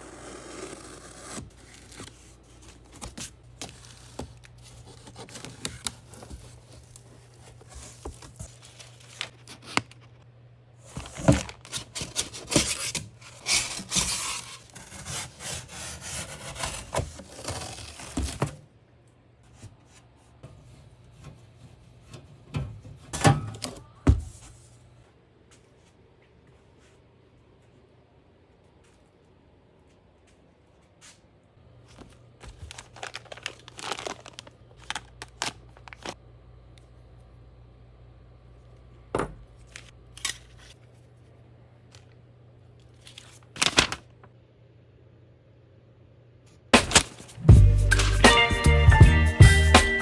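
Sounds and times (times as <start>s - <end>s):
packaging scraping and tearing: 0.0s - 10.2s, 10.8s - 18.6s, 32.4s - 36.2s, 43.0s - 44.0s, 46.8s - 48.2s.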